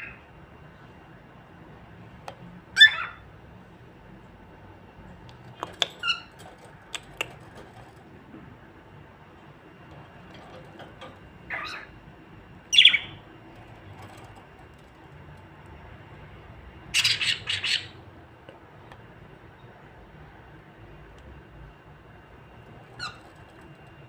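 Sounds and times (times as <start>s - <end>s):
lovebirds squawking and chirping: 2.8s - 3.2s, 5.8s - 7.4s, 11.4s - 12.0s, 12.7s - 13.2s, 16.9s - 18.0s, 23.0s - 23.4s.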